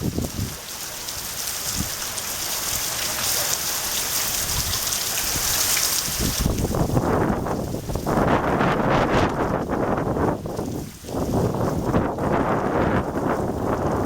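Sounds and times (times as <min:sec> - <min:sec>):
wind gusts rumbling: 0:00.0 - 0:00.7, 0:04.2 - 0:14.0
heavy rain pouring: 0:00.0 - 0:14.0.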